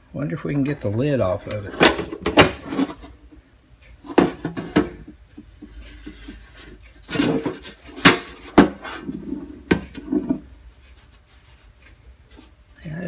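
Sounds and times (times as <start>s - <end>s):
metal toolbox lid clanking: 1.4s - 3.1s, 4.0s - 5.1s, 7.0s - 10.4s.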